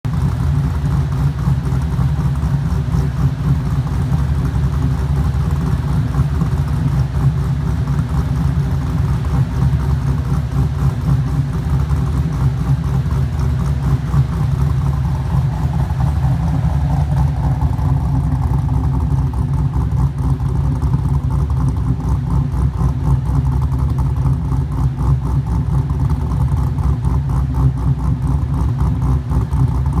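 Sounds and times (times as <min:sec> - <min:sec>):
v eight engine idling unevenly: 0:00.1 - 0:30.0.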